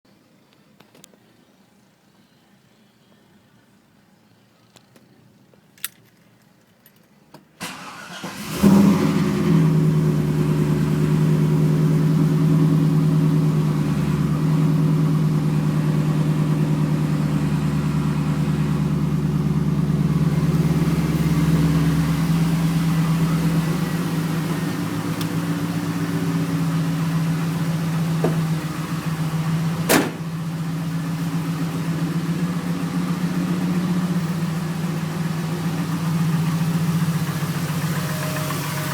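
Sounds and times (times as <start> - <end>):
car engine cranking and starting: 7.6 - 38.9
engine idling with rod knock: 20.5 - 31.2.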